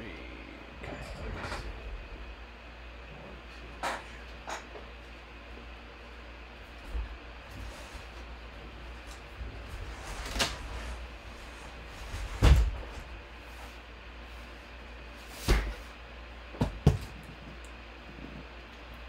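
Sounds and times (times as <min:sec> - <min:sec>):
steady low hum: 0:00.0 - 0:19.0
objects knocking and thumping: 0:16.6 - 0:17.2.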